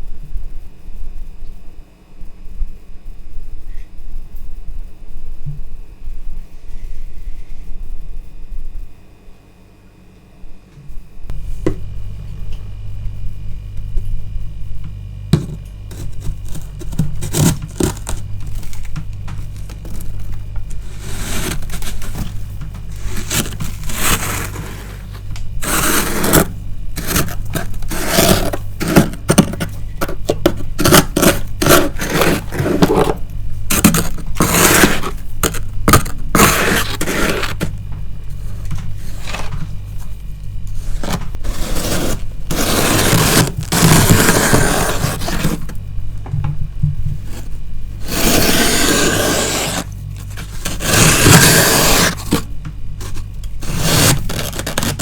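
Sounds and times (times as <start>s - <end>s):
steady low hum: 0.0s - 55.0s
scraping frost off freezer: 15.4s - 45.8s, 47.2s - 55.0s.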